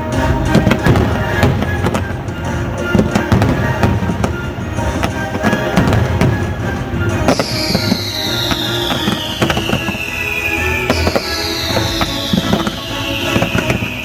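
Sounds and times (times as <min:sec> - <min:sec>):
fireworks bursting and crackling: 0:00.0 - 0:14.0
orchestral music over speakers: 0:00.0 - 0:14.0
long falling whistle: 0:02.9 - 0:14.0.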